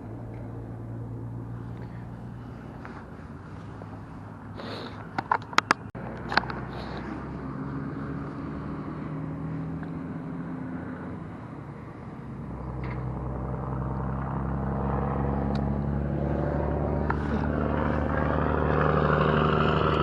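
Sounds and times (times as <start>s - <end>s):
sharp clicks and knocks: 5.2s - 6.6s
boat motor humming: 12.6s - 20.0s.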